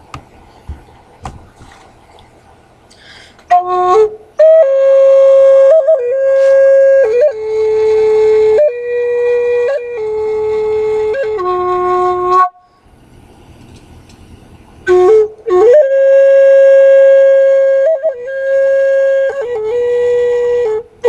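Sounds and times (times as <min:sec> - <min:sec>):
solo flute music: 0:03.5 - 0:12.9, 0:14.8 - 0:21.0.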